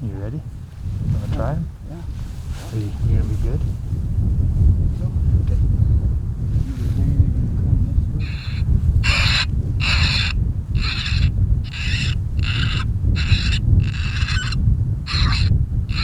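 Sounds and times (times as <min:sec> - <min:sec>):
wind rumble on microphone: 0:00.0 - 0:16.0
predator call yelping cries: 0:08.2 - 0:16.0.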